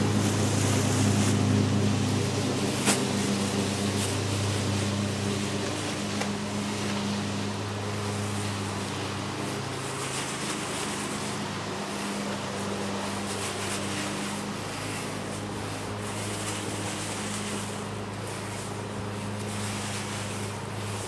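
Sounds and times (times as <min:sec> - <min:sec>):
constant hiss: 0:00.0 - 0:21.0.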